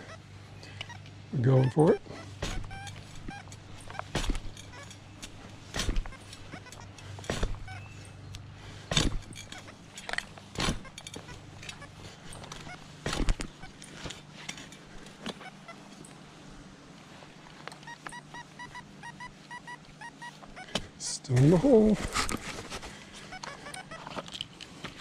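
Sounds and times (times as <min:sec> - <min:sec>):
digging tool chopping soil: 0:02.4 - 0:02.8, 0:03.9 - 0:04.6, 0:05.3 - 0:06.1, 0:07.2 - 0:07.7, 0:08.8 - 0:09.4, 0:10.5 - 0:11.0
pinpointer beeping: 0:17.8 - 0:20.7.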